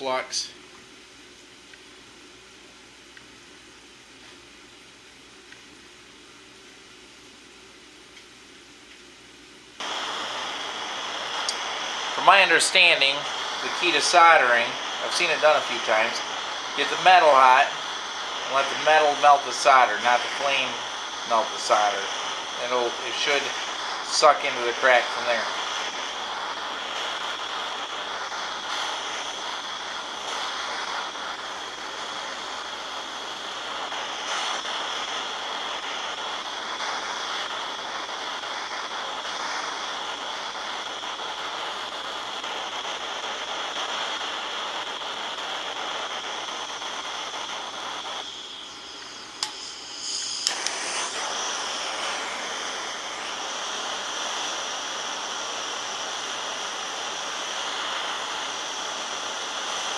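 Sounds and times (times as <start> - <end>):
torch flame hissing: 9.7 - 59.9
sharp click: 49.4 - 51.0.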